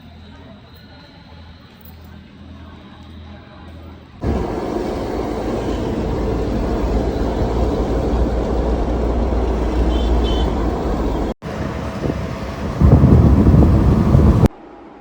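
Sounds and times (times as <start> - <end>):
car road and engine rumble: 4.2 - 14.5.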